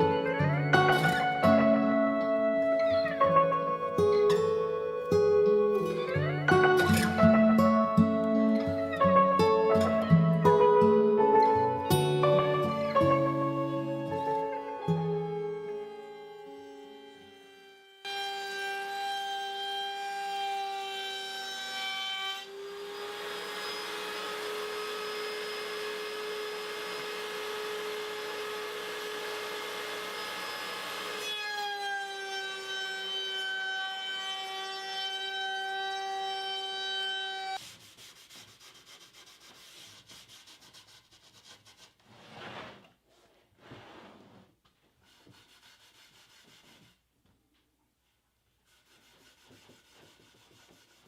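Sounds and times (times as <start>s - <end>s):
woodworking machine whining: 15.1s - 37.6s
saw cutting through board: 16.7s - 41.8s
faint rubbing on wood: 37.6s - 47.0s, 48.0s - 51.0s.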